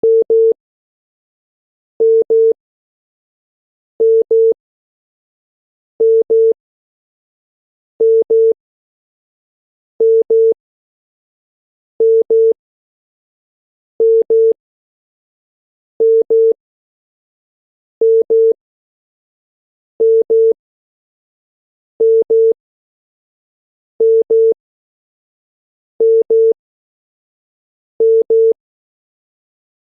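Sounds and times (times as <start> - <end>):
pairs of short telephone beeps: 0.0 - 0.6, 2.0 - 2.6, 4.0 - 4.6, 6.0 - 6.6, 8.0 - 8.6, 10.0 - 10.6, 12.0 - 12.6, 14.0 - 14.6, 16.0 - 16.6, 18.0 - 18.6, 20.0 - 20.6, 22.0 - 22.6, 24.0 - 24.6, 26.0 - 26.6, 28.0 - 28.6.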